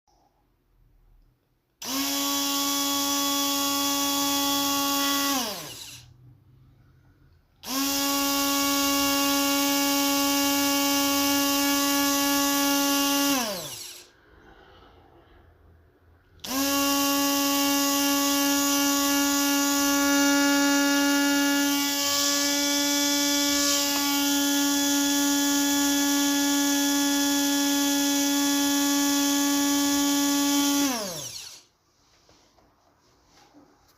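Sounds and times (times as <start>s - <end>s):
kitchen mixer motor whine: 1.8s - 6.1s, 7.6s - 14.1s, 16.4s - 31.7s.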